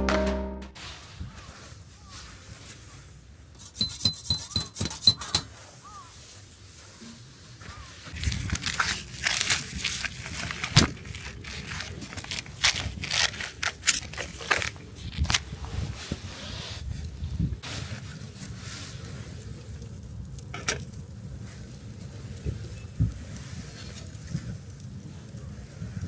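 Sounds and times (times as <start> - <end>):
crinkling and rustling: 5.4 - 21.6.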